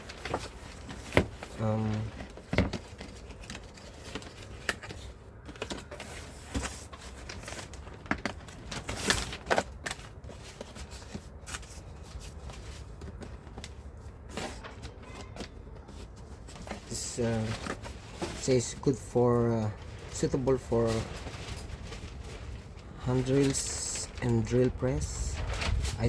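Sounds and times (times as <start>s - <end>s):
packaging handling clicks and knocks: 0.0s - 18.4s.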